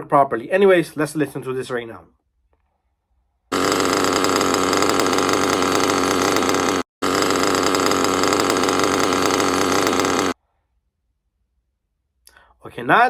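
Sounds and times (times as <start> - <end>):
small nitro engine running: 3.5 - 10.4
whirring of bad bearing: 3.5 - 10.4.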